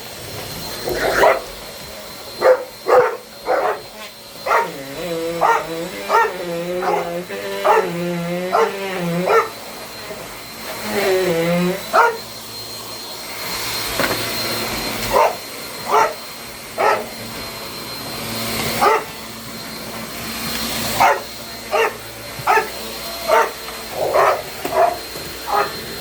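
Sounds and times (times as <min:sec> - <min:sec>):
vacuum cleaner running: 0:00.0 - 0:26.0
dogs barking: 0:00.9 - 0:01.6, 0:02.4 - 0:09.6, 0:11.9 - 0:12.3, 0:15.1 - 0:17.2, 0:18.8 - 0:19.2, 0:21.0 - 0:25.9.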